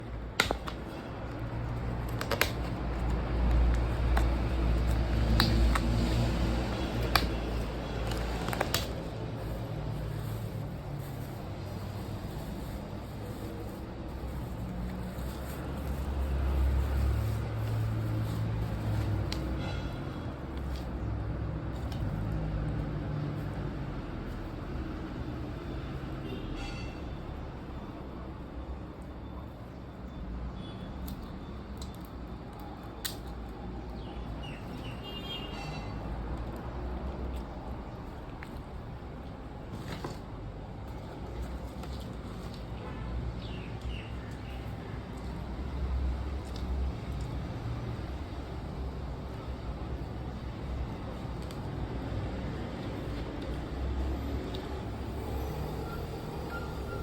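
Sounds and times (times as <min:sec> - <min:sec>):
eating clicks and squishes: 0:31.0 - 0:33.6.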